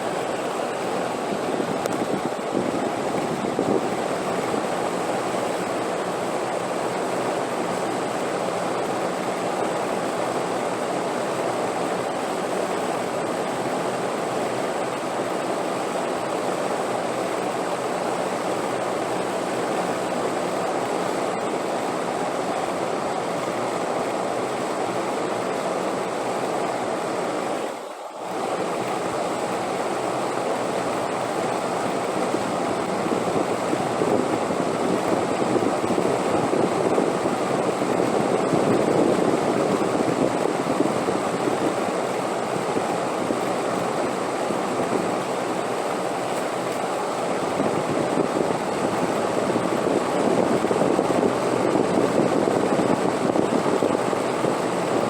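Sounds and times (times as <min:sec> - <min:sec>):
rushing wind: 0:00.0 - 0:10.4, 0:30.6 - 0:55.0.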